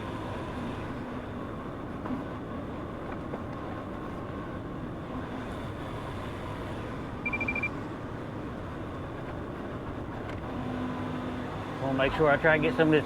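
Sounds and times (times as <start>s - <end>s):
excavator engine running: 6.9s - 8.2s
rapid high-pitched electronic beeps: 7.2s - 7.7s.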